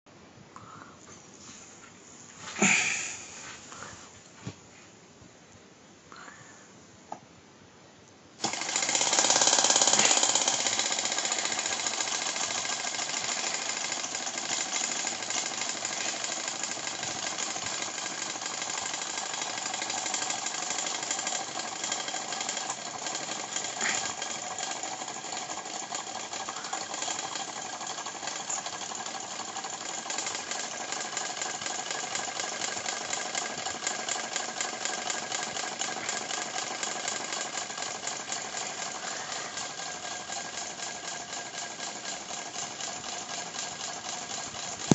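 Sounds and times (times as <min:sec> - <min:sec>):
small engine mechanical clatter: 0:08.4 - 0:44.9.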